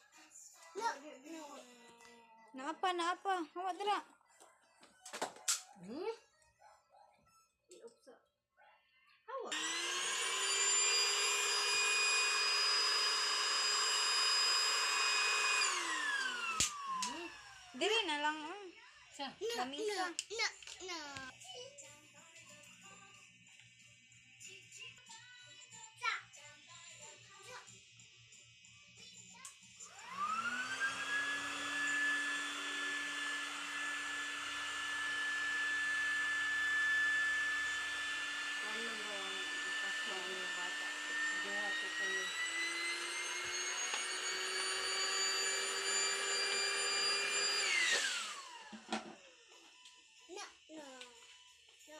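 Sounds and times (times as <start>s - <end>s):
electric air pump whining: 9.5s - 18.5s, 29.8s - 50.1s.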